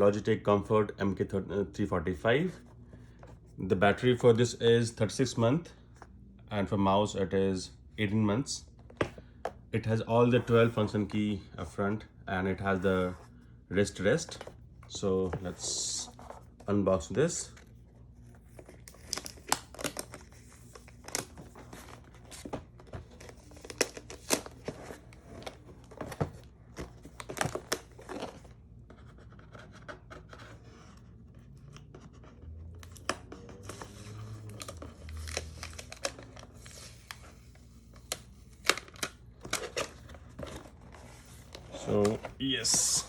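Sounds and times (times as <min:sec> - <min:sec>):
packaging tearing and rustling: 0:18.5 - 0:28.5, 0:32.8 - 0:43.0.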